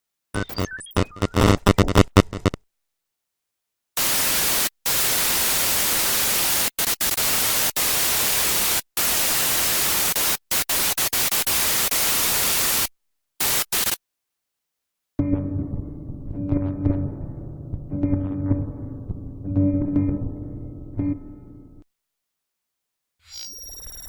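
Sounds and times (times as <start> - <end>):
stuttering white-noise static: 0.4 - 2.6, 4.0 - 14.0.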